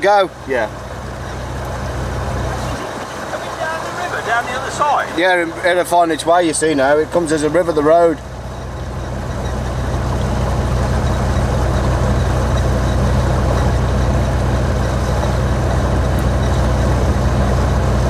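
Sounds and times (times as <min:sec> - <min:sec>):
diesel engine running at low revs: 0:00.0 - 0:18.0
broad rush of noise: 0:02.7 - 0:06.5.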